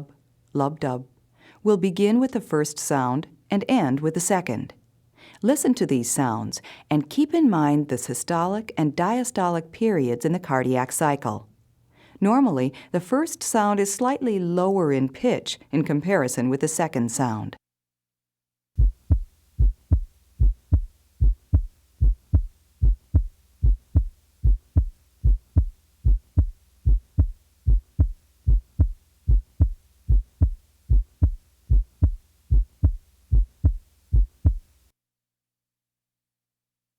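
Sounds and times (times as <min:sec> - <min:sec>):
heartbeat through stethoscope: 0:18.8 - 0:34.8.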